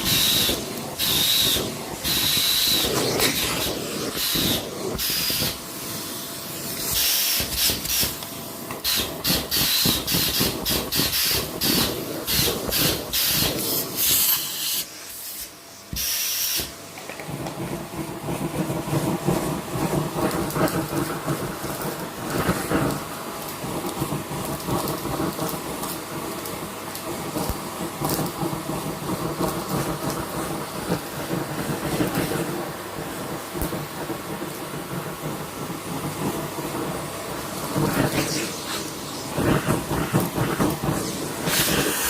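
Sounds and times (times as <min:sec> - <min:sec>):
vacuum cleaner suction hiss: 0:00.0 - 0:42.0
thin high whine: 0:37.3 - 0:42.0.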